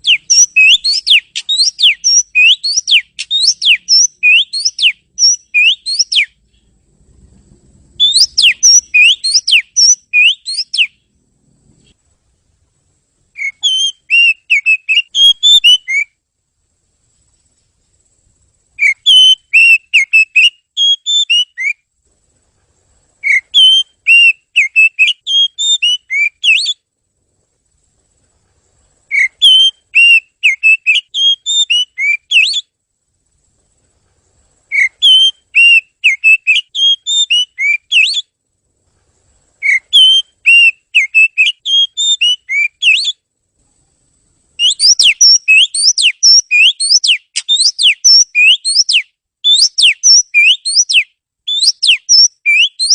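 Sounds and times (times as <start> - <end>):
bird singing whistled notes: 0.0 - 6.8, 7.9 - 11.1, 13.3 - 16.2, 18.7 - 21.9, 23.2 - 26.9, 29.1 - 32.7, 34.7 - 38.4, 39.6 - 43.2, 44.6 - 52.9.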